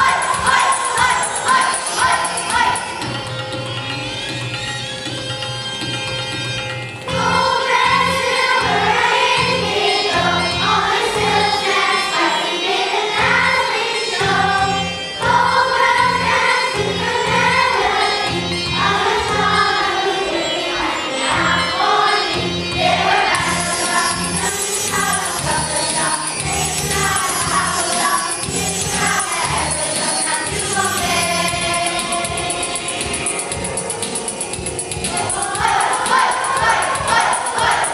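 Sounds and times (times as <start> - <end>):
children's choir singing: 0.0 - 3.2, 7.1 - 37.9
instrumental backing with beat: 0.0 - 37.9.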